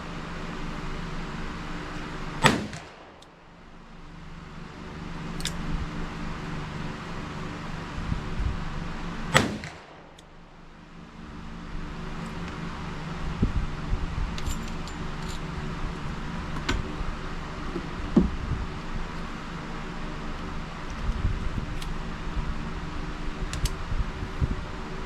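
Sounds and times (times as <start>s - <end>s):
steady hum: 0.0s - 25.0s
revolver gunshot: 2.4s - 3.4s, 9.3s - 10.2s.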